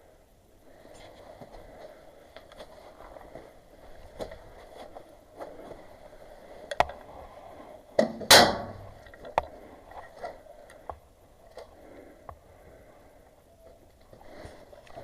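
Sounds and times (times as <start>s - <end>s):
airsoft shotgun clacks: 8.0s - 8.8s
airsoft shotgun loud snap: 8.3s - 8.9s.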